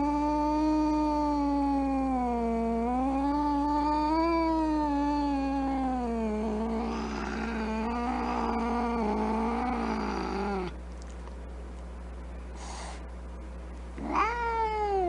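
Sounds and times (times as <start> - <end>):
angry cat yowling: 0.0 - 10.7, 14.0 - 15.0.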